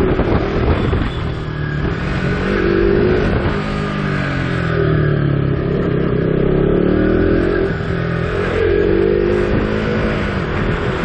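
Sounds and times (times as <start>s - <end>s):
wind rumble on microphone: 0.0s - 4.7s
motorcycle engine revving: 0.0s - 11.0s.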